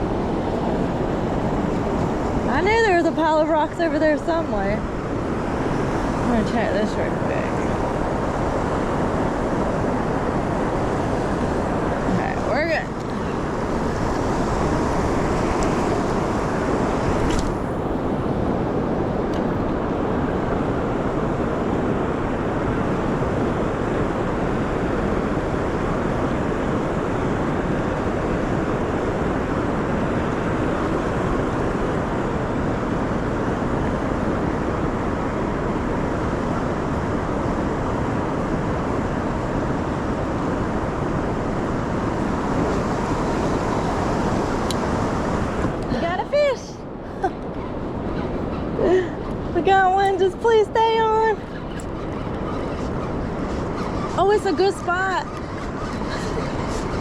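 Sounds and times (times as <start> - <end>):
river water rushing: 0.0 - 23.2, 36.9 - 57.0
wind: 0.0 - 57.0.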